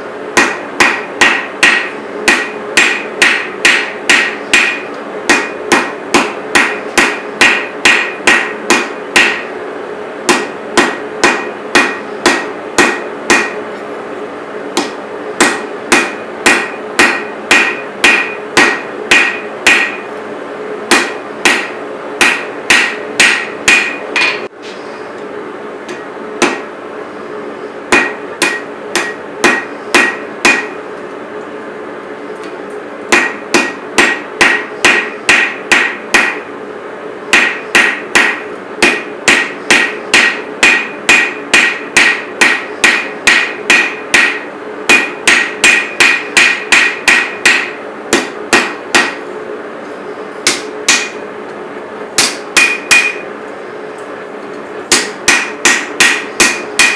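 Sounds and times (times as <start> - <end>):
steady hum: 0.0 - 56.9
hammer ringing on steel: 0.4 - 9.5, 10.3 - 13.6, 14.8 - 20.1, 20.9 - 24.5, 25.9 - 26.7, 27.9 - 30.8, 33.1 - 36.5, 37.3 - 49.2, 50.4 - 51.2, 52.2 - 53.3, 54.9 - 56.9.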